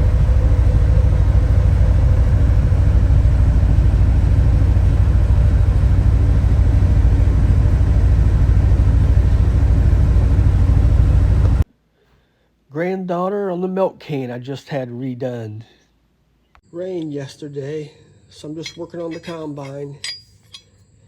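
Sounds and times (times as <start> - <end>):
combine harvester droning: 0.0 - 11.6.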